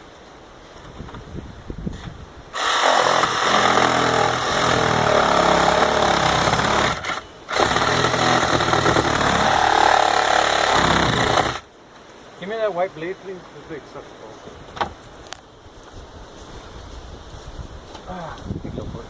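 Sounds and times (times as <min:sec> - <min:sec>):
power saw cutting into wall: 0:02.6 - 0:11.6.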